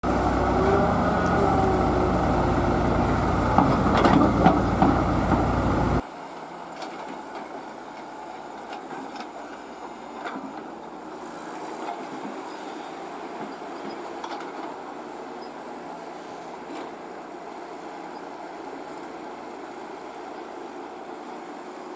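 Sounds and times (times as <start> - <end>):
diesel excavator engine running: 0.0 - 21.9
quiet steady machine noise: 0.0 - 21.9
machine knocks and clanks: 2.2 - 6.0.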